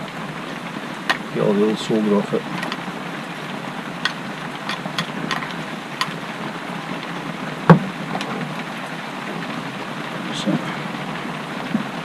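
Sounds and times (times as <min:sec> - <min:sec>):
rain on a shed roof: 0:00.0 - 0:12.0
sharp knock: 0:07.7 - 0:08.0.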